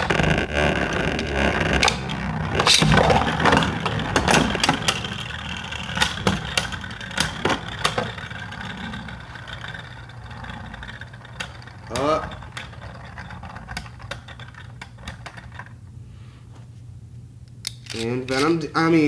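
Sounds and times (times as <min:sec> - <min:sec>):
spinning tops whirring: 0:00.0 - 0:15.9
spinning tops clacking together: 0:01.8 - 0:15.8.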